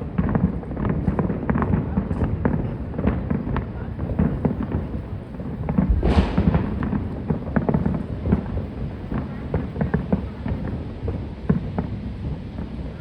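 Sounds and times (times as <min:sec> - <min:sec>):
fireworks popping and crackling: 0:00.0 - 0:13.0
heavy firework boom: 0:05.6 - 0:08.4.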